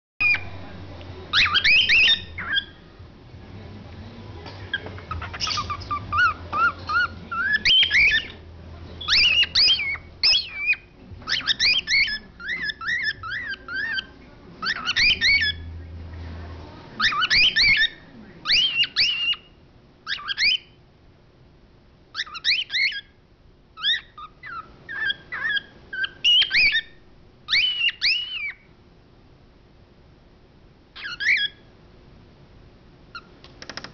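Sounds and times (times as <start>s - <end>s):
cockatiel chirping: 0.2s - 0.5s, 1.3s - 2.8s, 4.7s - 8.4s, 9.0s - 15.8s, 17.0s - 20.8s, 22.1s - 23.1s, 23.8s - 28.7s, 31.0s - 31.7s.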